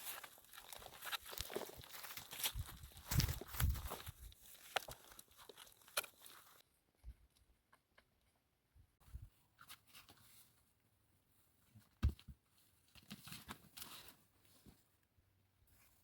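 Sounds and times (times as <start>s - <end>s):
rustling and crunching material: 0.0s - 6.6s.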